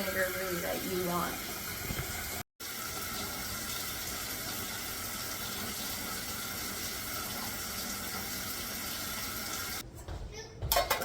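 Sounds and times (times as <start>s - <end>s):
tap water running into jar: 1.6s - 4.6s.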